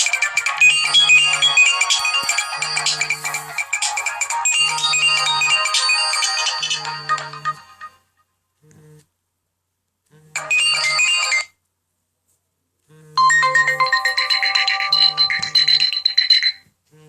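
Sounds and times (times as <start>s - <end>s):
phone ringtone melody: 0.0s - 8.1s, 10.4s - 11.6s, 13.2s - 16.7s
phone vibration buzzing: 2.6s - 3.6s.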